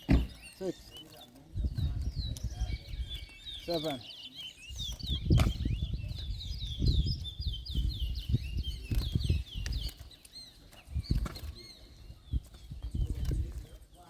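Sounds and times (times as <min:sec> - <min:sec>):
fluttering thumps: 0:00.0 - 0:00.7, 0:04.9 - 0:07.1
finch singing slurred whistles: 0:00.0 - 0:13.9.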